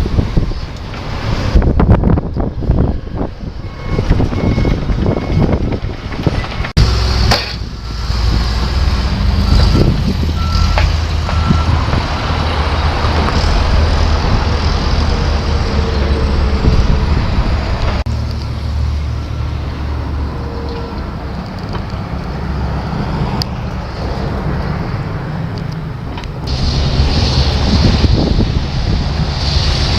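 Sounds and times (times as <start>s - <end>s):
heavy vehicle engine running: 0.0s - 29.9s
reversing alarm beeping: 2.8s - 6.8s, 9.4s - 12.1s.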